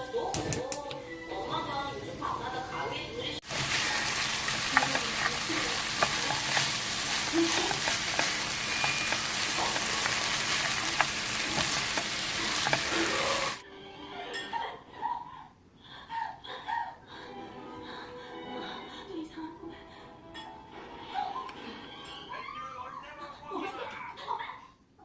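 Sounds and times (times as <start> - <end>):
quiet music: 0.0 - 15.5, 17.0 - 23.6
rice sizzling in a pan: 3.4 - 13.6
spatula clicking against pan: 4.5 - 12.9.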